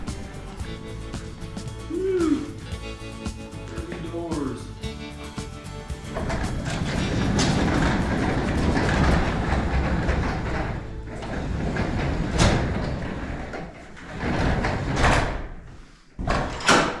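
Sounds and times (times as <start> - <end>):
garage door rolling on tracks: 0.0 - 17.0
garage door knocks and thuds: 5.9 - 15.6, 16.2 - 17.0.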